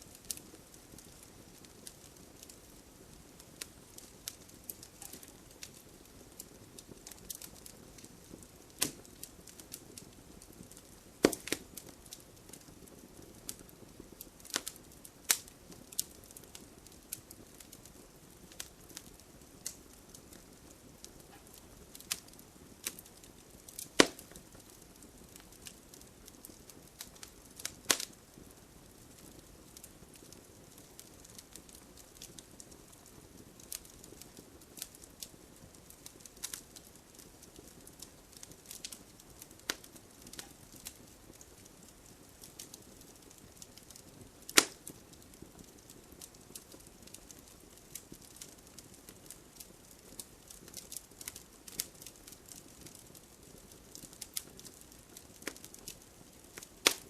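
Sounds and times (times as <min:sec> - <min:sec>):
soft steady fire hiss: 0:00.0 - 0:57.0
wood fire crackling: 0:00.0 - 0:57.0
loud sharp pops: 0:11.2 - 0:11.6, 0:23.9 - 0:24.4, 0:44.5 - 0:44.8.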